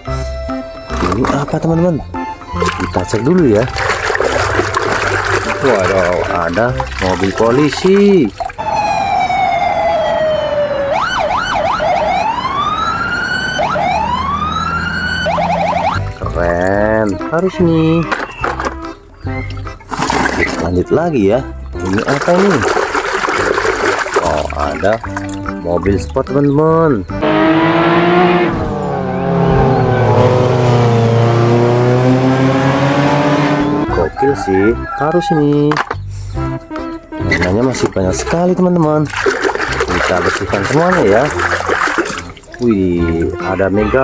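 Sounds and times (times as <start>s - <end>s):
police siren wailing: 8.5s - 19.6s, 27.1s - 35.7s
sports car engine running: 27.2s - 33.9s.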